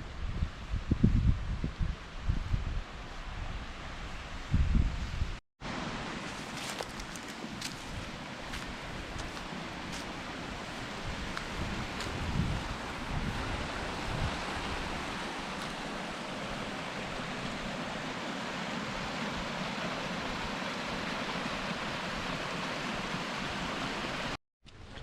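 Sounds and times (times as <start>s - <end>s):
flowing water rushing: 5.6s - 24.4s.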